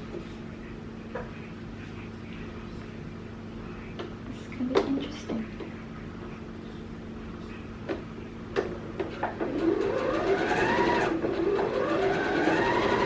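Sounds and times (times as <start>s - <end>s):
sewing machine motor whine: 9.4s - 13.0s.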